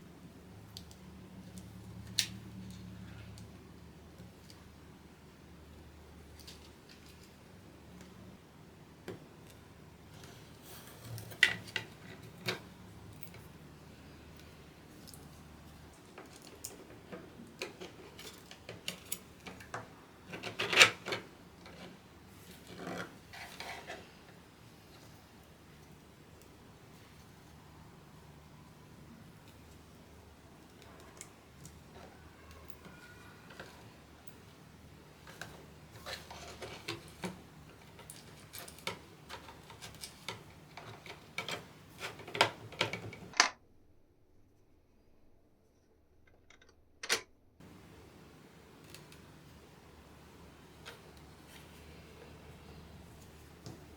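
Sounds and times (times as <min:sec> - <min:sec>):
scraping rustle: 0:20.4 - 0:24.4
small hard parts clicking and tapping: 0:35.2 - 0:43.6.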